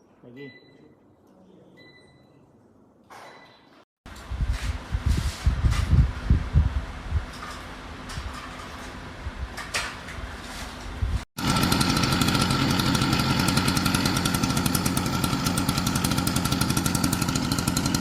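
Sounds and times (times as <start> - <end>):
small engine running: 11.4 - 18.0.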